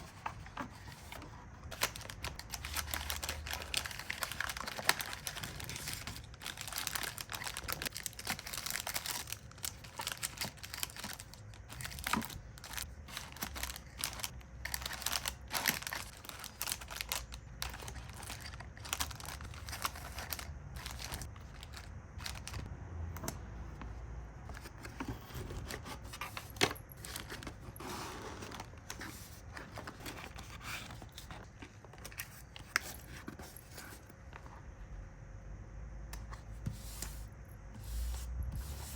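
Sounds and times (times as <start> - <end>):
plastic packaging crinkling: 0.0 - 22.7.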